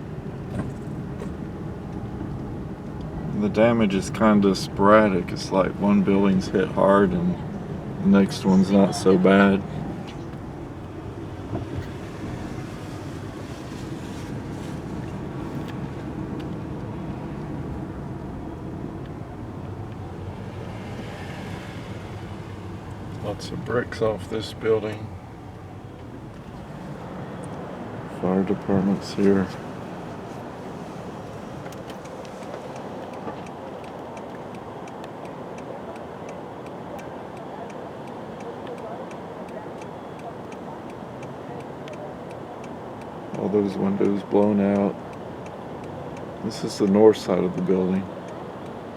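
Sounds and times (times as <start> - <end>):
background rumble: 0.0 - 34.9
car engine and road noise: 0.0 - 48.9
faint regular ticking: 22.2 - 26.6, 31.2 - 48.9
faint clicks: 31.6 - 48.8.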